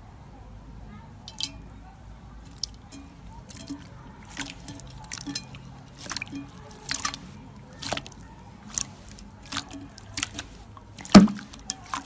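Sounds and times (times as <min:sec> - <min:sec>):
slime squishing with sticky pops: 0:02.4 - 0:12.0.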